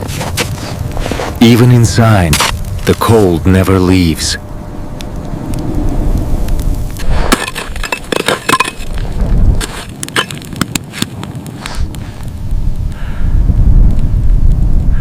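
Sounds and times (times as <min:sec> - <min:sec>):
low rumble: 0:00.0 - 0:10.0
sharp crackles and snaps: 0:00.0 - 0:15.0.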